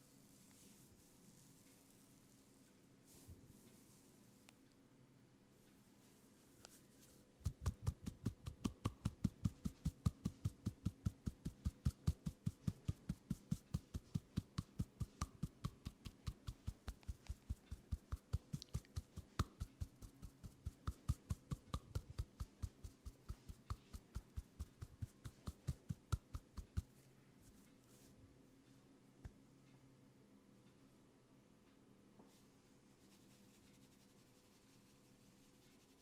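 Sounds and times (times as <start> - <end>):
hands slapping on skin: 7.4 - 26.9.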